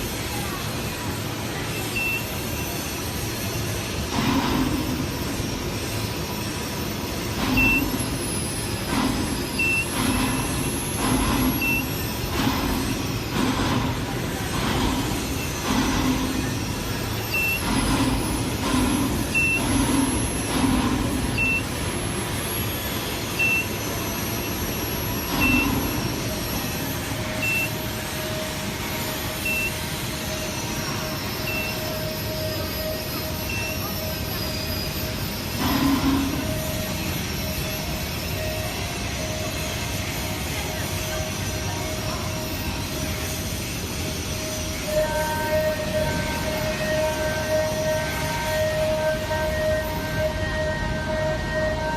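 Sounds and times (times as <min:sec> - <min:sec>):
worksite machinery rumbling: 0:00.0 - 0:51.9
short high electronic beep: 0:01.7 - 0:02.7, 0:07.4 - 0:08.5, 0:09.5 - 0:12.5, 0:17.2 - 0:18.1, 0:18.7 - 0:20.1, 0:21.2 - 0:21.8, 0:23.3 - 0:26.3, 0:27.3 - 0:27.9, 0:29.4 - 0:29.9, 0:31.4 - 0:36.5.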